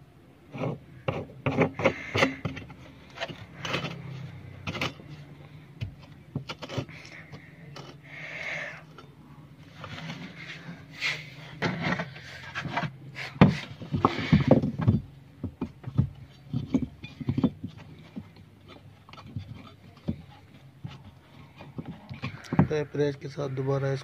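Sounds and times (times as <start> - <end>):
tools knocking and clicking on parts: 0.6 - 8.0, 11.6 - 22.8.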